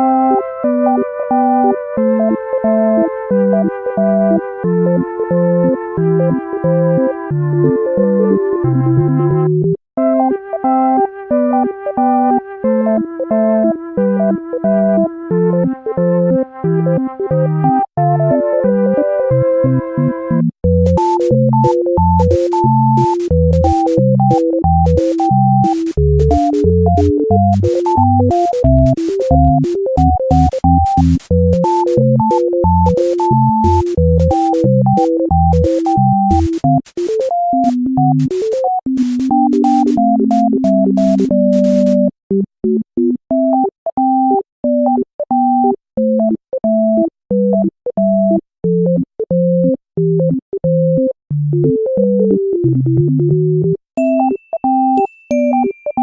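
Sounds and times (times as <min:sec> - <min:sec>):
synthesizer and keyboard melody: 0:00.0 - 0:47.8, 0:48.6 - 0:56.0
beat with bass: 0:20.7 - 0:42.1.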